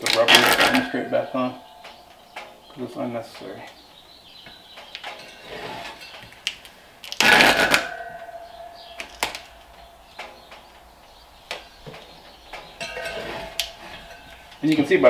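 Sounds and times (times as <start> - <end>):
tape ripping off roll: 0.0 - 0.9, 6.4 - 7.9.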